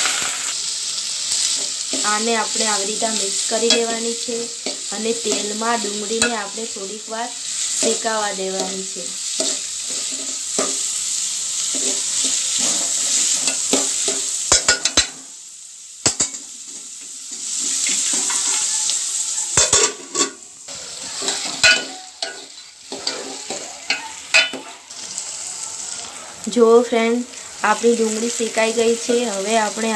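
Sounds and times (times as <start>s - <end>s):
onions sizzling in hot oil: 0.0s - 29.9s
spoon scraping against pan: 7.4s - 15.2s, 16.0s - 25.2s.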